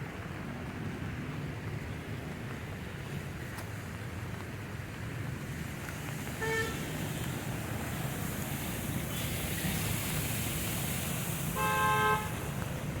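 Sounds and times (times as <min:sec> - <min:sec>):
traffic rumble: 0:00.0 - 0:13.0
vehicle horn tooting: 0:06.4 - 0:06.8, 0:11.6 - 0:12.5.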